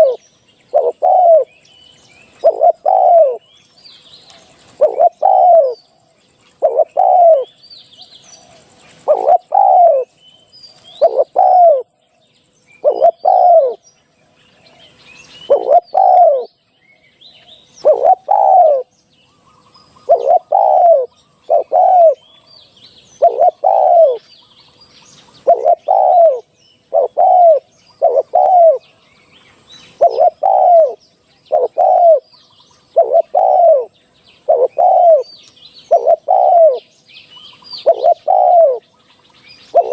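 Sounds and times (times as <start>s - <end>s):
dove cooing: 0.0s - 1.6s, 2.2s - 3.6s, 4.6s - 5.8s, 6.5s - 7.6s, 9.0s - 10.2s, 10.9s - 12.0s, 12.8s - 13.8s, 15.4s - 16.6s, 17.8s - 18.9s, 19.9s - 22.5s, 23.1s - 24.2s, 25.3s - 28.9s, 29.9s - 36.9s, 37.6s - 38.9s, 39.6s - 39.9s
small birds chirping: 0.0s - 39.9s.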